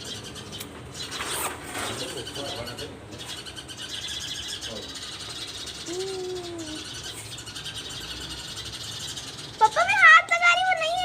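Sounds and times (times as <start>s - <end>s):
sparrows chirping: 0.0s - 11.0s
low cooing call: 5.8s - 6.9s.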